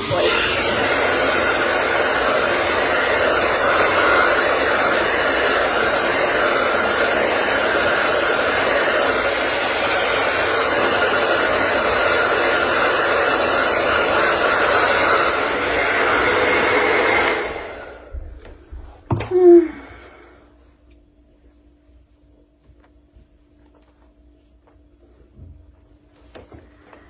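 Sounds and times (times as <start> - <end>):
electric appliance rushing air: 0.0 - 20.2.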